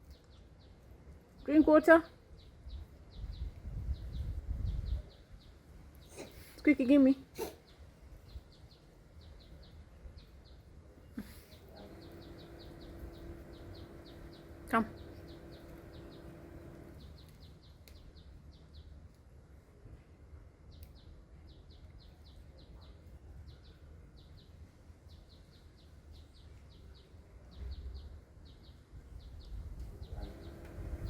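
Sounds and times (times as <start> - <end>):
steady low rumble: 11.8 - 17.1.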